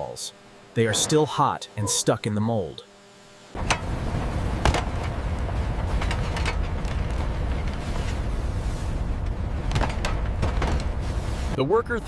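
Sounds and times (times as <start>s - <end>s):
factory machinery rumbling: 3.6s - 12.0s.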